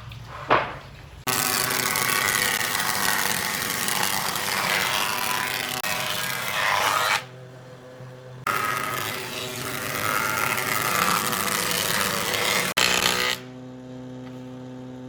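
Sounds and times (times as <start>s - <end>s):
power tool working wood: 1.3s - 7.3s, 8.4s - 13.6s.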